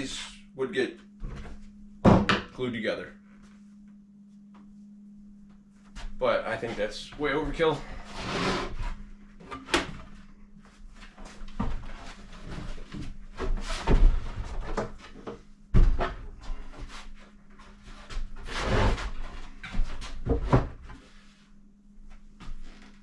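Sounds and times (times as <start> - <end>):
wood scraping on wood: 8.0 - 9.0.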